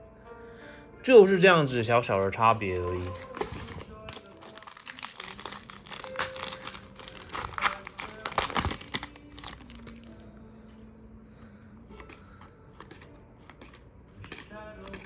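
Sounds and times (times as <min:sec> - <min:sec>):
plastic wrapper crinkling and tearing: 0:01.9 - 0:10.2, 0:12.8 - 0:15.0.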